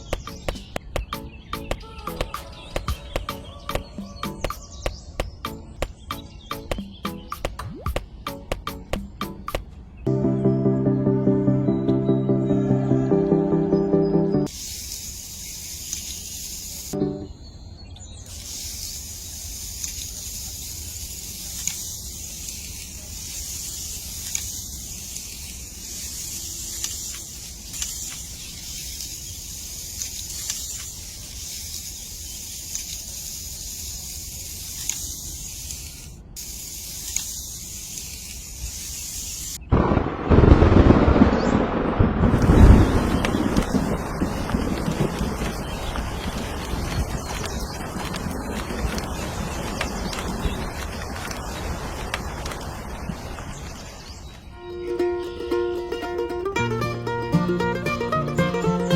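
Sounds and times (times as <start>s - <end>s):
steady high hiss: 0.0s - 40.0s, 42.1s - 58.9s
music: 1.1s - 2.4s, 5.4s - 14.5s, 17.0s - 17.3s, 54.6s - 58.9s
wind buffeting microphone: 39.7s - 54.4s.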